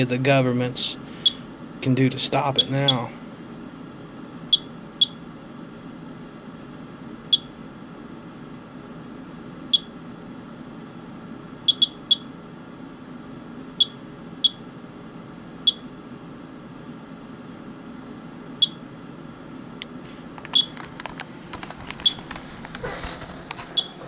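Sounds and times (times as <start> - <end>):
geiger counter beeping: 2.5 - 3.1, 4.5 - 5.2, 7.3 - 7.5, 9.7 - 10.0, 11.6 - 12.3, 13.8 - 14.6, 15.6 - 15.9, 18.6 - 18.8.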